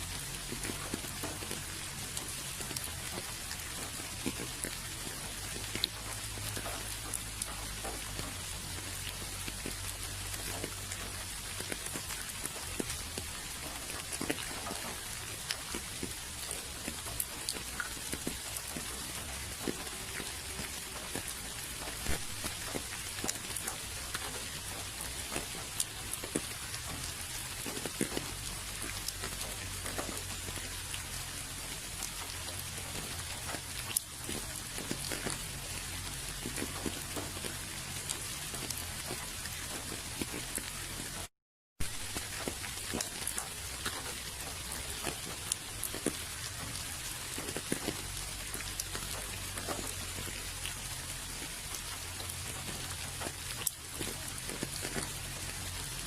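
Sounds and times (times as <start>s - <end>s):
drops ticking on a surface: 0.0s - 41.3s
steady rain hiss: 0.0s - 56.0s.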